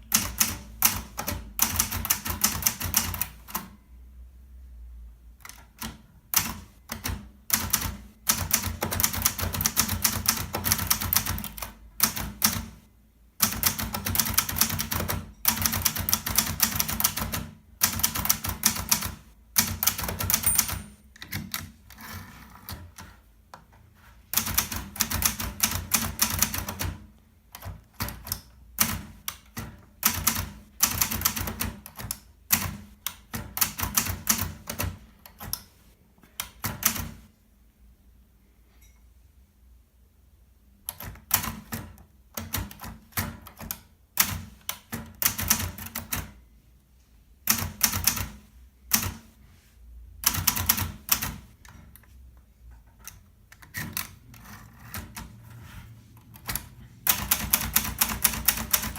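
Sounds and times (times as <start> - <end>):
typewriter key strikes: 19.8 - 21.6.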